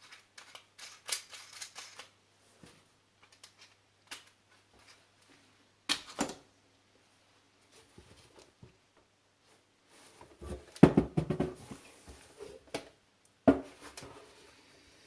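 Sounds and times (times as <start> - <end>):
hard objects knocking: 10.8 - 11.6.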